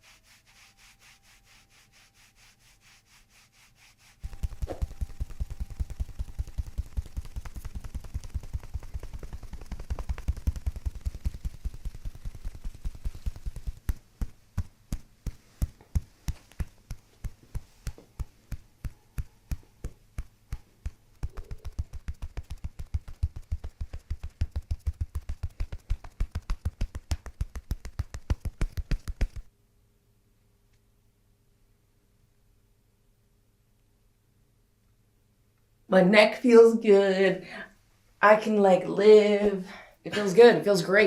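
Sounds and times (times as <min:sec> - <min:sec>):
rapid knocking: 0:04.2 - 0:29.5.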